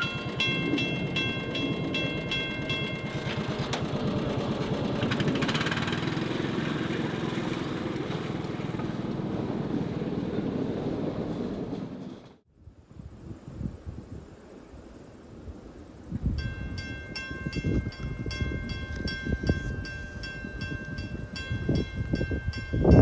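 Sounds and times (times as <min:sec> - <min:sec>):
level crossing bell ringing: 0:00.0 - 0:03.9
train rumble and wheel clatter: 0:00.0 - 0:12.5, 0:13.1 - 0:23.0.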